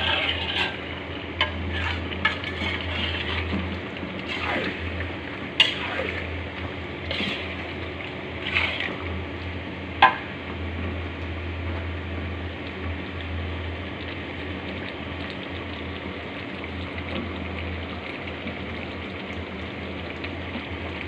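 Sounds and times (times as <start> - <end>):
food sizzling in a pan: 0.0 - 9.3.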